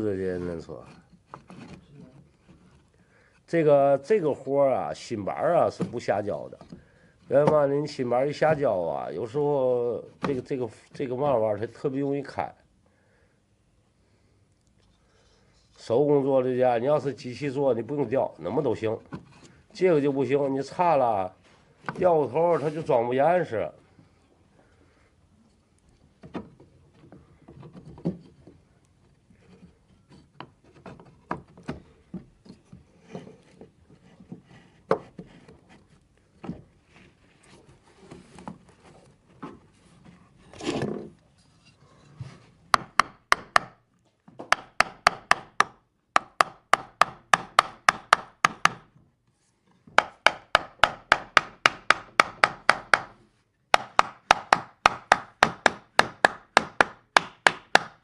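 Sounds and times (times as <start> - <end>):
wooden parts knocking and rubbing: 0.0 - 2.9, 26.2 - 49.1, 49.7 - 58.0.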